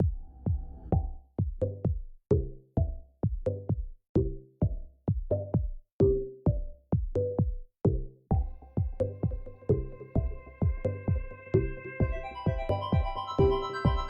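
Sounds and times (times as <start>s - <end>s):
drum machine beat: 0.0s - 14.0s
electronic music: 8.3s - 14.0s.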